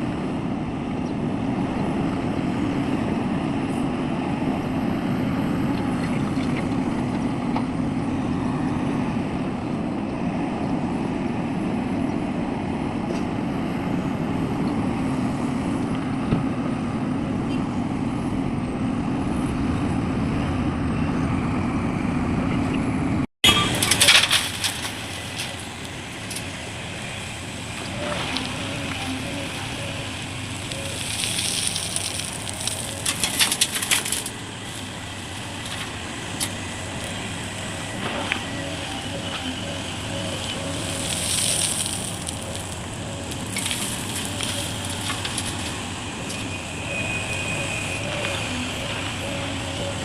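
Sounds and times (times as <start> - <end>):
heavy diesel machinery rumbling: 0.0 - 50.0
scattered crackles and clicks: 23.7 - 26.6, 27.8 - 38.5, 39.1 - 49.7.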